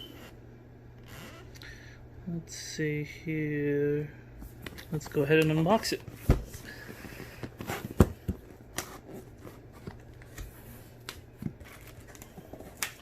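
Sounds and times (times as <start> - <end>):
cardboard box being unpacked: 11.4 - 13.0.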